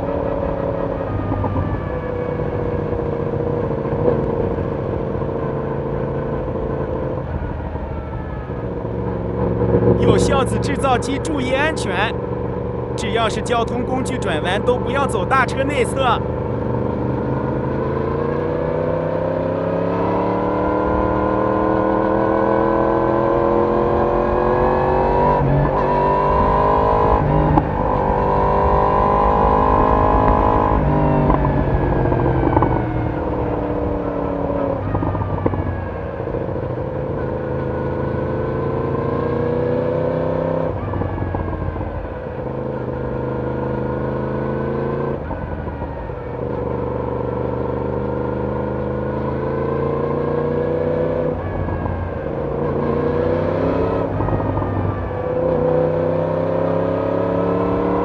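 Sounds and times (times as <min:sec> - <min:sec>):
motorcycle engine accelerating: 0:16.2 - 0:58.0.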